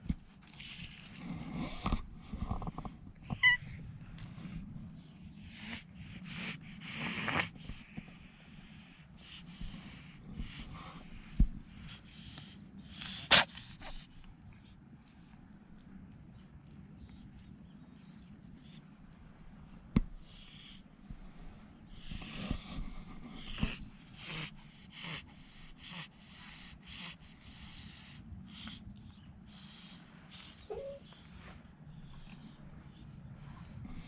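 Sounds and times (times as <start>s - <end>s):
kitten sneezing and snuffling: 12.9s - 14.1s.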